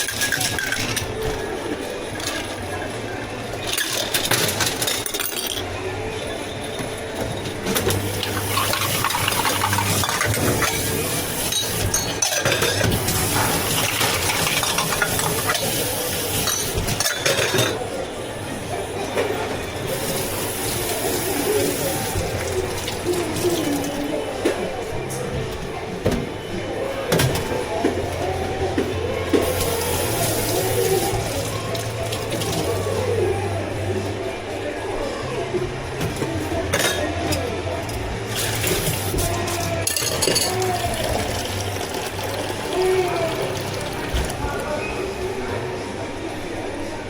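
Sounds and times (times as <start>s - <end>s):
cups and utensils clinking: 0.0s - 18.1s, 36.0s - 44.8s
liquid pouring: 38.3s - 44.4s.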